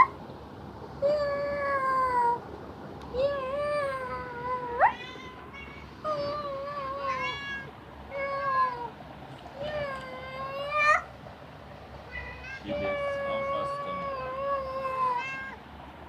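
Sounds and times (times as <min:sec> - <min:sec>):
cat meowing: 0:03.2 - 0:08.9, 0:09.6 - 0:11.1, 0:12.1 - 0:15.6.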